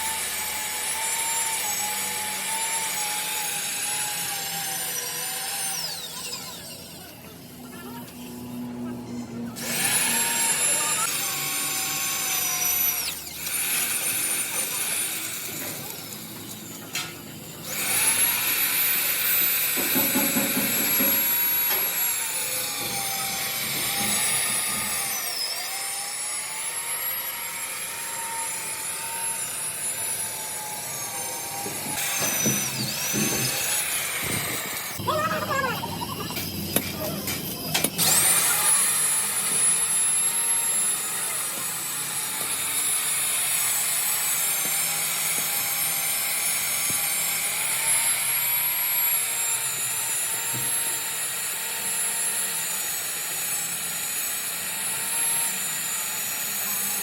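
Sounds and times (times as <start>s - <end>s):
power tool whining: 0.0s - 57.0s.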